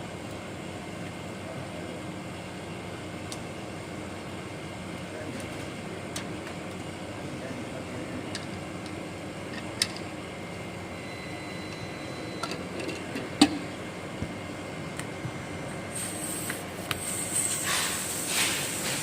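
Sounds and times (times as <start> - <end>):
steady mechanical hum: 0.0 - 19.0.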